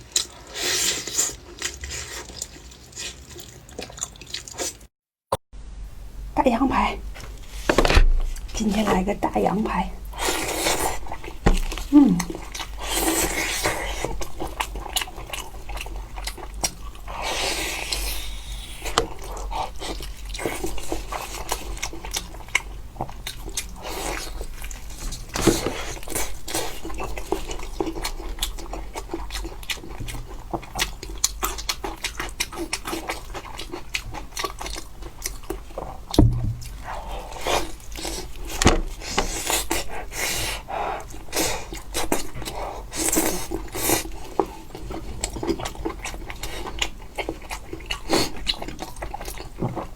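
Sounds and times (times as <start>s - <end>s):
person chewing meat: 0.0s - 4.9s, 10.0s - 49.9s
dull thump: 7.7s - 8.4s, 36.2s - 36.7s.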